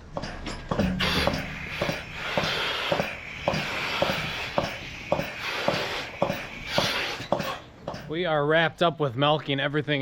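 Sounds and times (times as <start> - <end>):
milking machine pulsator clicks: 0.0 - 8.3
vacuum hiss: 1.0 - 7.5.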